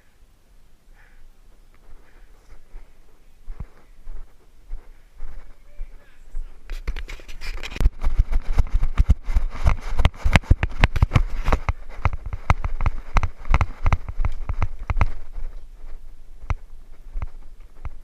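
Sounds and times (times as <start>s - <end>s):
movement noise: 1.0s - 18.0s
running footsteps: 1.4s - 18.0s.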